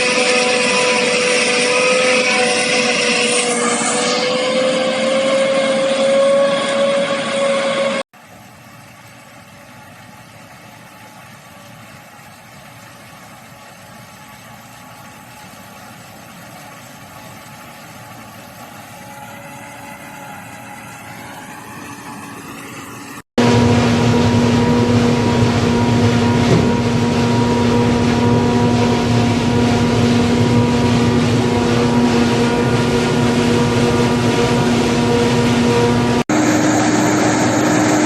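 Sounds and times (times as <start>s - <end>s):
combine harvester engine: 0.0s - 8.0s, 18.7s - 38.0s
faint machine drone: 0.0s - 38.0s.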